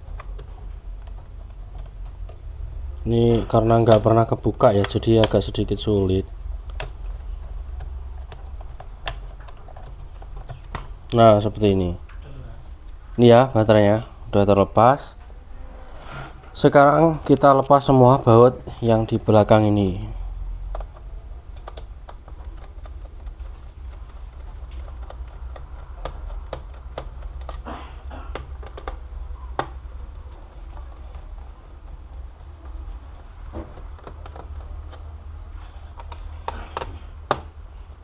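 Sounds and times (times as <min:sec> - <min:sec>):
steady low hum: 0:00.0 - 0:38.0
screwdriver clicking on plastic: 0:20.7 - 0:27.6.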